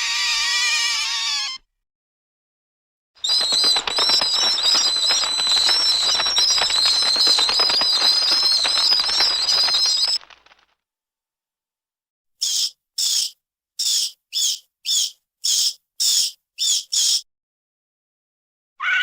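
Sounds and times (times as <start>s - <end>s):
bats squeaking: 3.2s - 10.6s, 12.4s - 17.2s
bat wingbeats fluttering: 3.2s - 10.7s.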